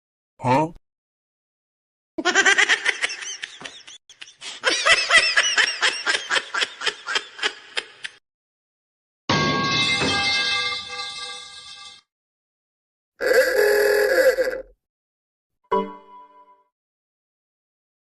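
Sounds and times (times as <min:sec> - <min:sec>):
high-pitched laughter: 0:02.2 - 0:08.2.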